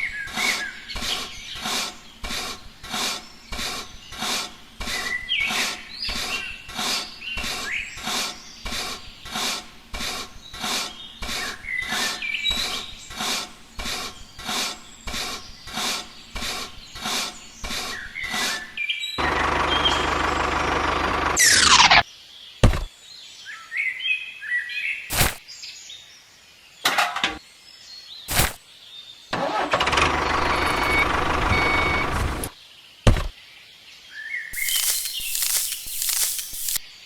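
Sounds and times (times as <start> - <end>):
small birds chirping: 0.0 - 20.4, 31.6 - 37.0
rhythmic scraping strokes: 34.6 - 36.8.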